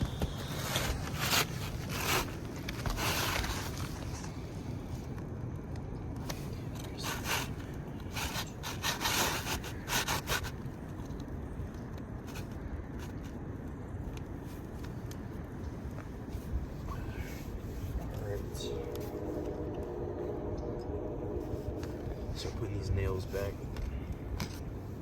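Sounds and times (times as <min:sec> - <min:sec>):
shingle scraping against shingles: 0:00.0 - 0:04.3, 0:06.3 - 0:11.1.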